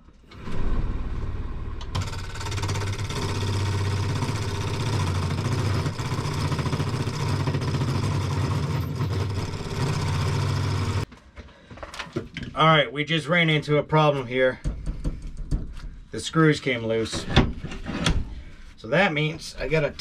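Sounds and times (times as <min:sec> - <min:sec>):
scraper cutting spinning wood: 0:02.0 - 0:11.0
wood lathe motor humming: 0:02.0 - 0:11.0.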